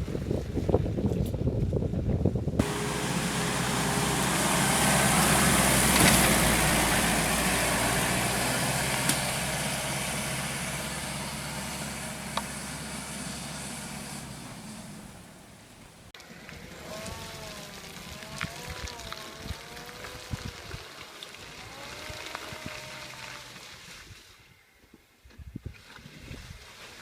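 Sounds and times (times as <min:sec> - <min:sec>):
car engine running: 0:02.6 - 0:16.1
tyres hissing on wet ground: 0:02.6 - 0:16.1.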